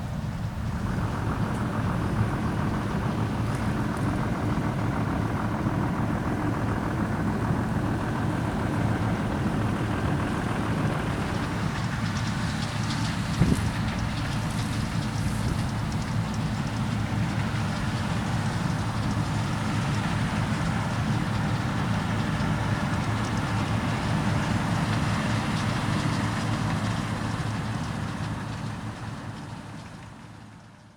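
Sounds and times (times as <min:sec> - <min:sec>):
combine harvester droning: 0:00.0 - 0:30.9.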